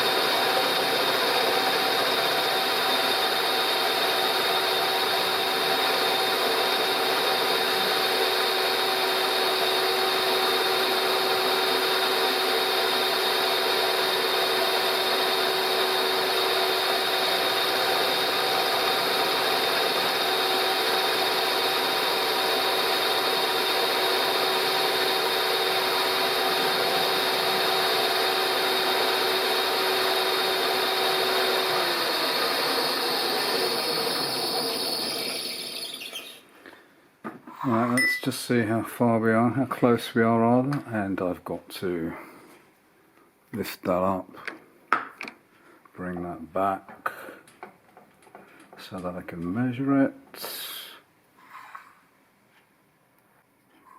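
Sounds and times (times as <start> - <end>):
cutter cutting metal: 0.0 - 36.4
milling machine motor hum: 0.0 - 36.4.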